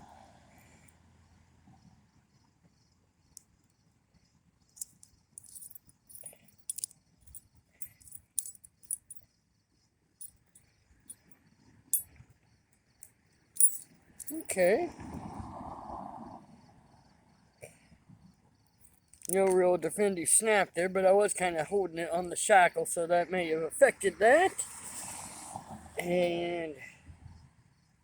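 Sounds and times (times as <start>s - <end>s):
key clicking in padlock: 4.8s - 9.2s, 13.6s - 14.5s.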